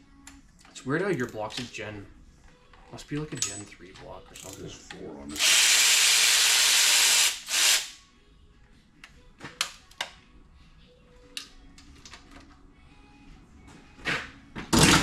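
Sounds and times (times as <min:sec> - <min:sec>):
power tool hissing: 0:05.4 - 0:08.0.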